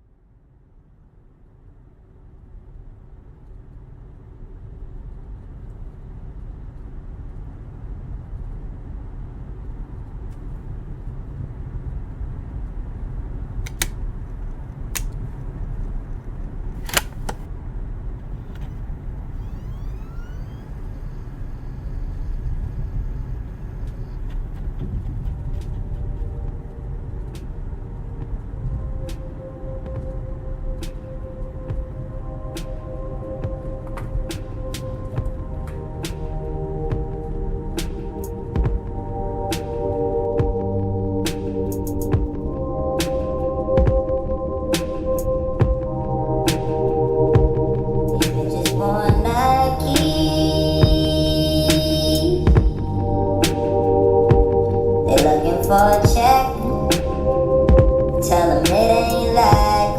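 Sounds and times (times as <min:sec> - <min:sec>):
sharp clicks: 0:13.7 - 0:14.0, 0:15.0 - 0:15.2, 0:16.8 - 0:17.5
steady tones: 0:46.6 - 0:59.9.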